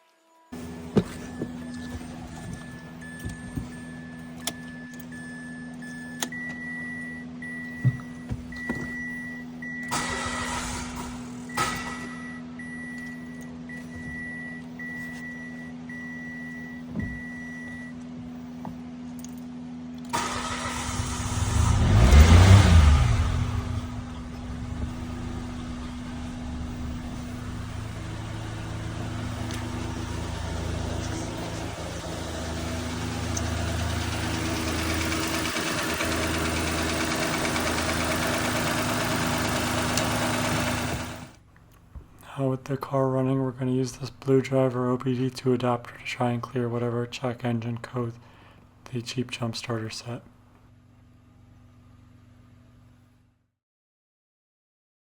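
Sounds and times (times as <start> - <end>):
car engine idling: 0.6 - 15.0, 20.1 - 41.4
car engine cranking and starting: 0.6 - 15.3, 20.0 - 41.4.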